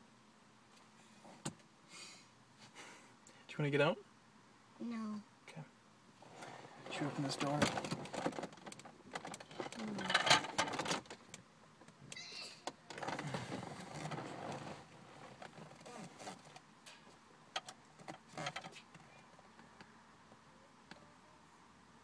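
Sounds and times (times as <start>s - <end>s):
rustling: 12.9s - 17.2s.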